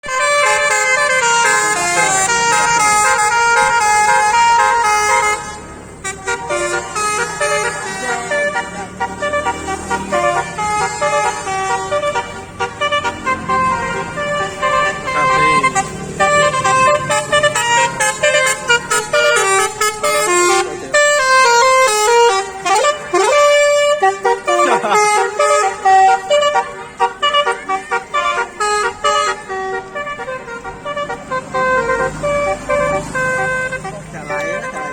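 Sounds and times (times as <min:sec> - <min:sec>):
multi-tone musical horn: 0:00.0 - 0:34.9.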